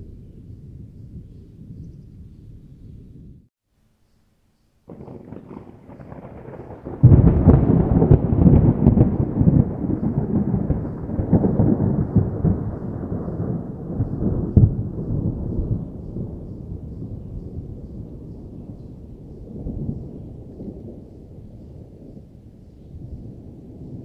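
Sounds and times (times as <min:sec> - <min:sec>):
distant thunder rumbling: 0:04.9 - 0:24.0.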